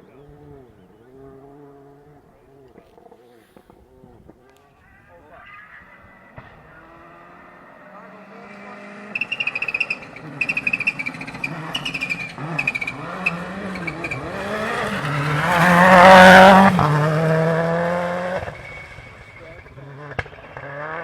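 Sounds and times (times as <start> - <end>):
rally car engine revving: 0.0 - 3.3, 6.0 - 21.0
high-pitched chirping bursts: 9.1 - 14.2.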